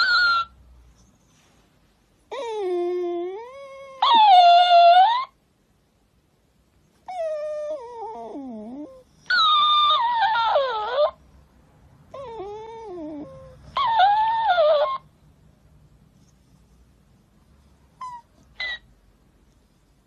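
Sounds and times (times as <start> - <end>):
dog whining and howling: 0.0 - 0.6, 2.3 - 5.4, 7.0 - 11.2, 12.1 - 15.1, 18.0 - 18.9.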